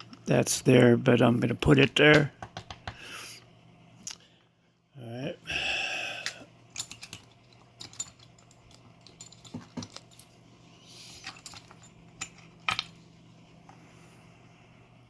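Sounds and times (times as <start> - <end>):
small metal parts clicking: 6.2 - 10.3, 11.2 - 13.0.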